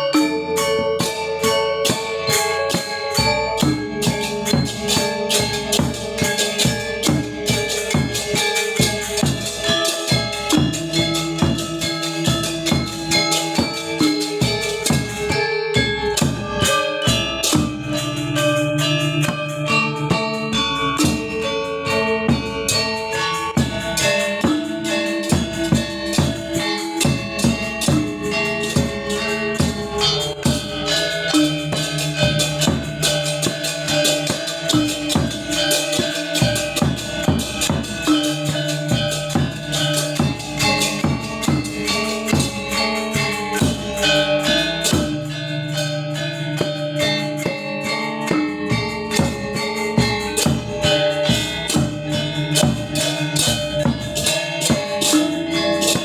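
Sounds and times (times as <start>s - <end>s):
gamelan gong ensemble playing: 0.0s - 56.0s.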